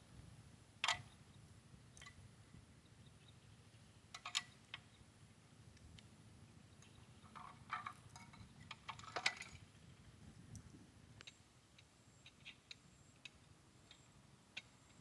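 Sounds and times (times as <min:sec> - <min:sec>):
small clicks and knocks: 0:00.8 - 0:01.2, 0:04.1 - 0:05.0, 0:06.8 - 0:09.8, 0:10.5 - 0:15.0.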